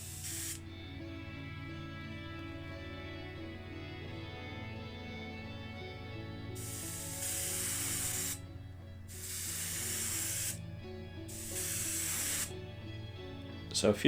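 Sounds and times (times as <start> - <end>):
airbrush spraying hiss: 0.0 - 0.6, 6.6 - 8.4, 9.1 - 10.6, 11.3 - 12.6.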